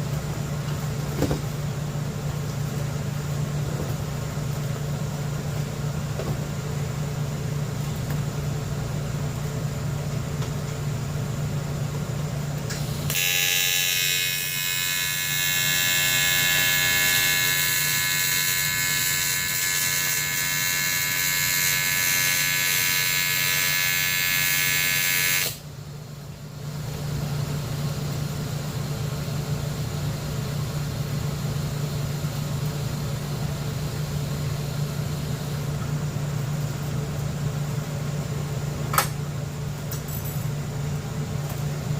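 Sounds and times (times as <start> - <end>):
welding arc buzzing hiss: 12.6 - 25.7, 27.2 - 35.8.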